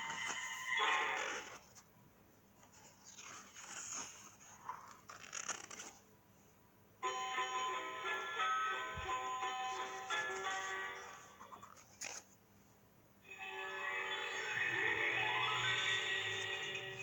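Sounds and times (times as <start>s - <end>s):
faint noisy sound effect: 13.2s - 17.0s
tinkly electronic tune: 13.3s - 17.0s.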